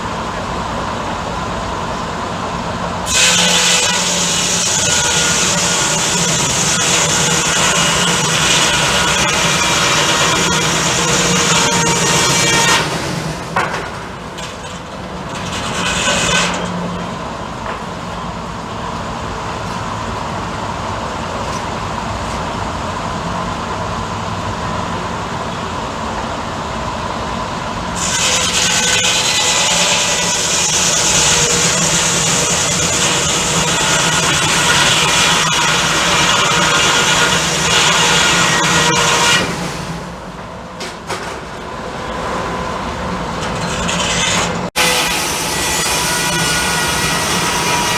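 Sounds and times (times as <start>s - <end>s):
sawmill humming: 0.3s - 20.5s, 26.2s - 47.9s
saw blade cutting log: 3.1s - 17.0s, 28.0s - 40.2s, 43.4s - 47.9s.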